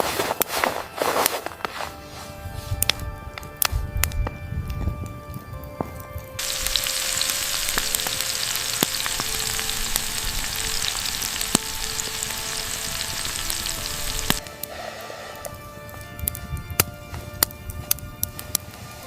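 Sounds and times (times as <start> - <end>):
sizzling hiss with crackles: 0.0 - 19.0.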